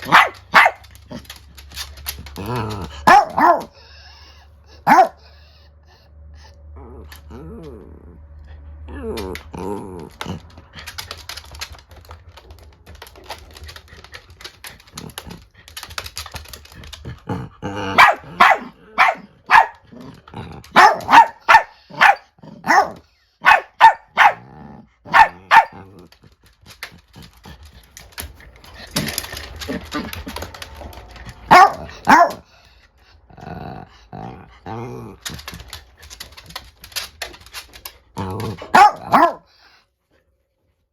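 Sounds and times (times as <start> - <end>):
sharp loud dog barks: 0.0 - 0.8, 3.1 - 3.7, 4.9 - 5.2, 18.0 - 19.7, 20.8 - 24.4, 25.1 - 25.8, 31.5 - 32.4, 38.7 - 39.4
small dogs growling: 0.0 - 11.7, 13.1 - 23.0, 23.8 - 36.6, 37.7 - 39.5
claws scrabbling: 9.2 - 24.4, 25.1 - 32.4.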